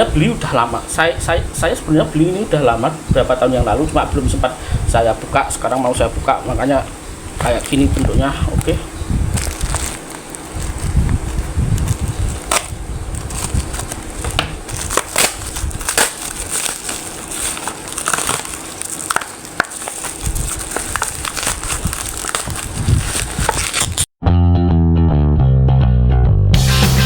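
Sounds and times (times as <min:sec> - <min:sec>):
packaging crinkling: 0:07.4 - 0:24.1.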